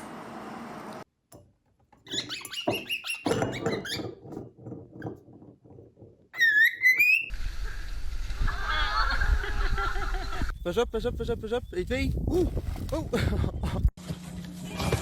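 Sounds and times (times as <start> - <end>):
animal squeaking calls: 2.1 - 4.0, 6.4 - 7.3.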